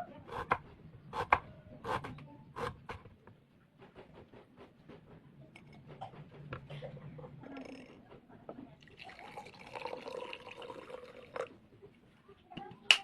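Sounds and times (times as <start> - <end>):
knife cutting on a cutting board: 1.2 - 3.0.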